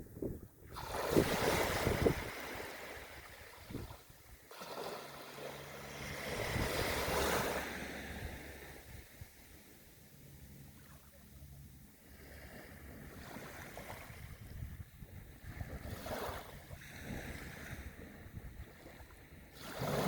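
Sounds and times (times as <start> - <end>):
wind buffeting microphone: 0.0 - 4.4, 6.1 - 9.5, 12.8 - 20.0
waves breaking on beach: 0.7 - 9.9, 12.0 - 14.6, 15.3 - 20.0.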